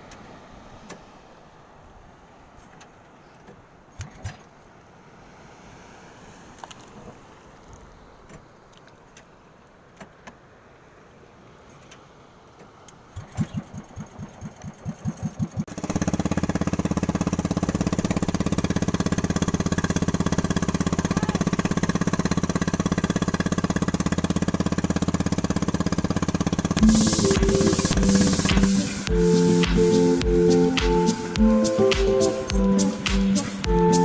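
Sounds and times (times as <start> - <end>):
boat engine cranking and running: 13.2 - 34.0
music: 26.8 - 34.0.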